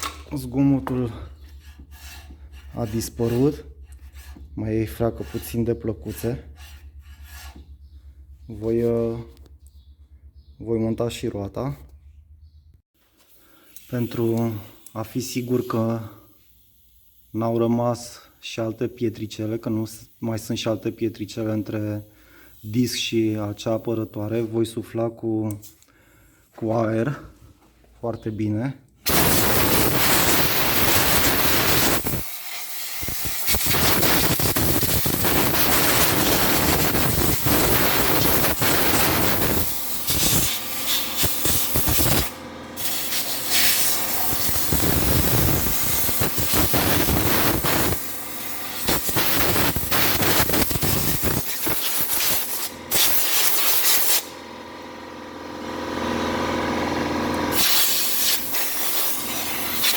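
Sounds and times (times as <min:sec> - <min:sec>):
compressed-air blow gun hissing: 0:19.3 - 0:23.9, 0:29.1 - 0:54.3, 0:57.6 - 0:59.9.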